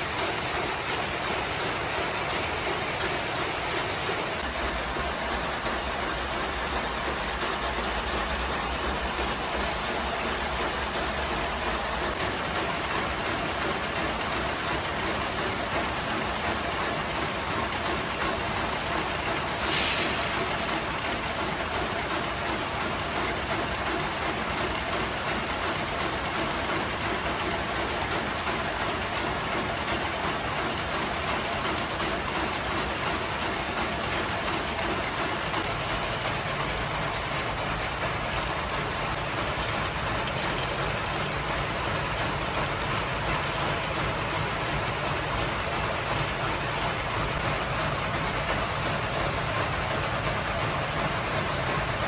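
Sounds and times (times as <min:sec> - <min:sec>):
factory machinery din: 0:00.0 - 0:52.0
loud hiss: 0:19.3 - 0:21.0.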